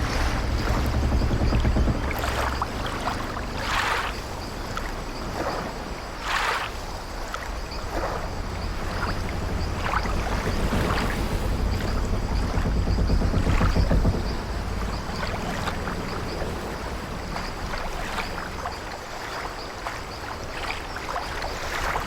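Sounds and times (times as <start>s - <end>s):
low rumble: 0.0s - 5.5s, 7.5s - 19.0s
wooden timbers creaking: 0.0s - 5.7s, 7.5s - 18.8s
waves washing against hull: 0.0s - 22.0s.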